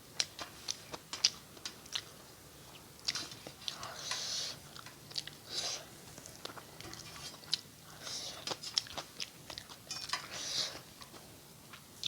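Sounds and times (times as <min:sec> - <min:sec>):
person chewing wetly: 0:03.0 - 0:05.5, 0:08.4 - 0:11.9.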